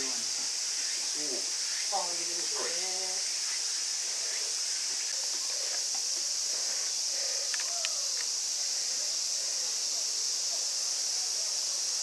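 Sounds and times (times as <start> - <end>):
cicadas droning: 0.0 - 12.0
faint clicks: 7.4 - 8.4.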